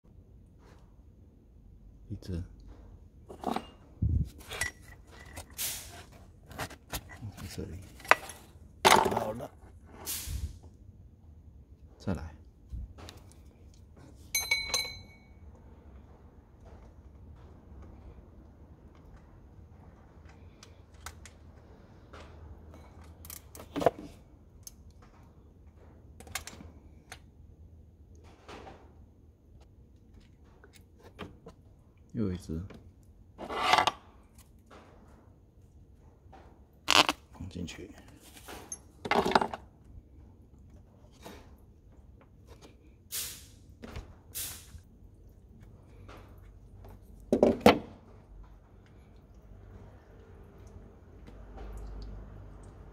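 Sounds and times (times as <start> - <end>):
tools scraping: 3.3 - 10.3, 33.4 - 34.4
metal tool clicks and clinks: 14.4 - 15.3.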